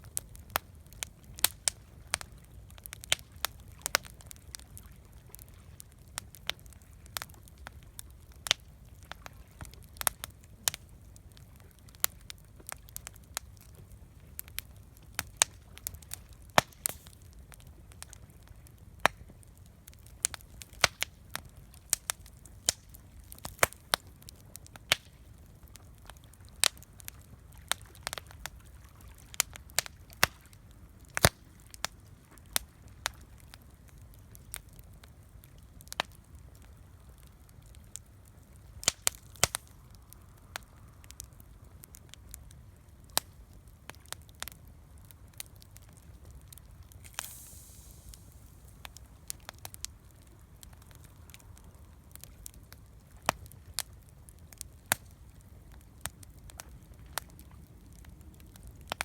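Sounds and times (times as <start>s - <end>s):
campfire crackling and popping: 0.0s - 59.0s
low steady rumble: 44.7s - 54.3s.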